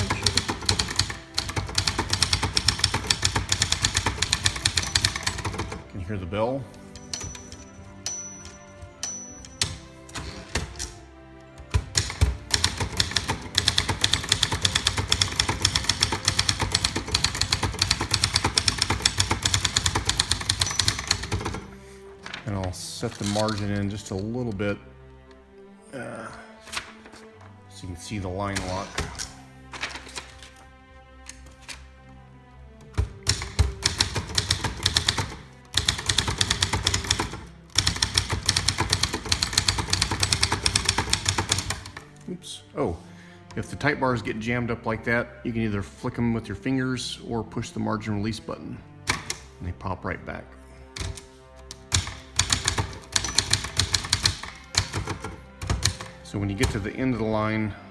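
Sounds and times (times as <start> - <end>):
manual typewriter typing: 0.0 - 5.8, 11.7 - 21.7, 22.3 - 23.8, 33.0 - 42.1, 51.0 - 56.8
soft background music: 0.0 - 57.9.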